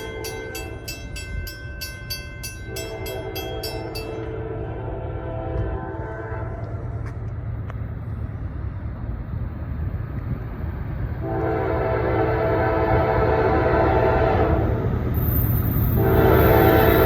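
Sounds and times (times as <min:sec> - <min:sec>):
train rumbling: 0:00.0 - 0:17.0
locomotive air horn chord: 0:02.6 - 0:06.8, 0:11.2 - 0:14.9, 0:15.9 - 0:17.0.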